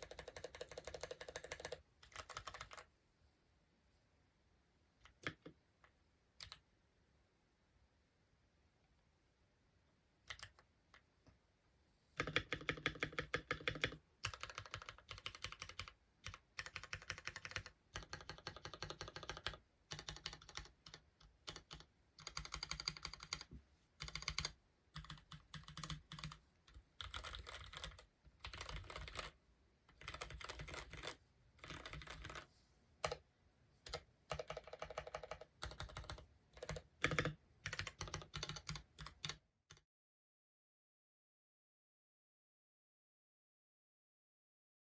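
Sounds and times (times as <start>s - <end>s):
mechanical keyboard typing: 0.0s - 2.9s, 5.0s - 5.6s, 6.4s - 6.6s, 10.3s - 10.6s, 12.2s - 33.2s, 33.8s - 39.8s.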